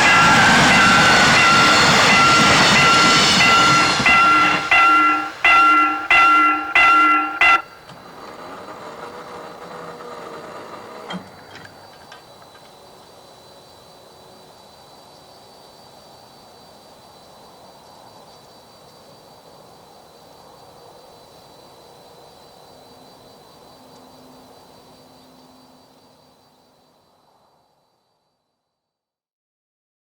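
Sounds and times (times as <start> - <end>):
thin high tone: 0.0 - 7.8
train horn blast: 0.0 - 7.8
train running noise: 0.0 - 13.2.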